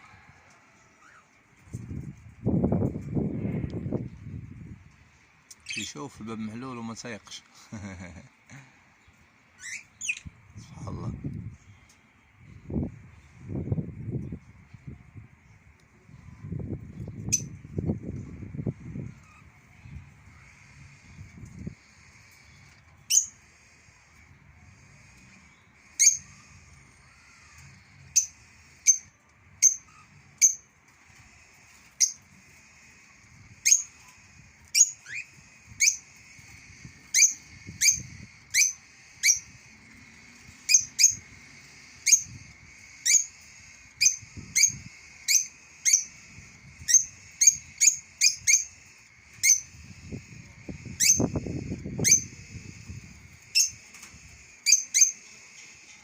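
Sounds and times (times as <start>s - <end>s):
bird giving sharp chirps: 5.6s - 6.2s, 20.4s - 56.0s.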